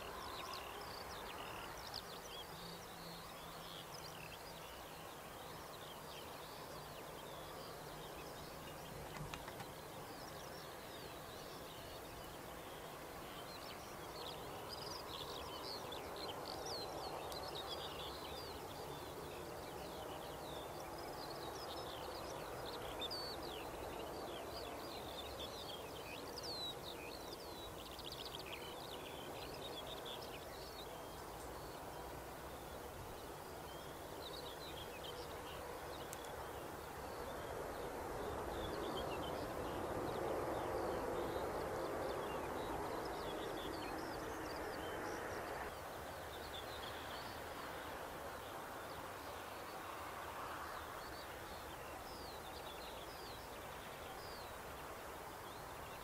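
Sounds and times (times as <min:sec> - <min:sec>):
small birds chirping: 0:00.0 - 0:56.0
steady outdoor noise: 0:00.0 - 0:56.0.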